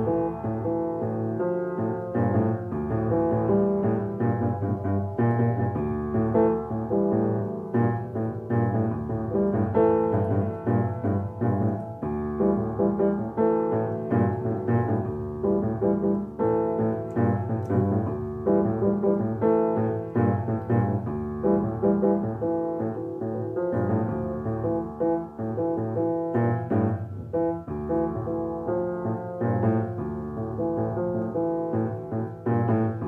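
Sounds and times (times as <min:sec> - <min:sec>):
piano music: 0:00.0 - 0:33.0.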